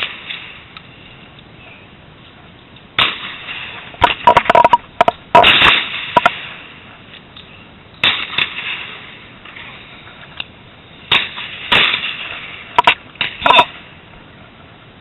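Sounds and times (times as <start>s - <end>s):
quick sharp cracks: 3.0s - 6.5s, 8.0s - 9.0s, 11.1s - 13.7s
shotgun shots: 5.4s - 6.4s, 11.1s - 12.2s.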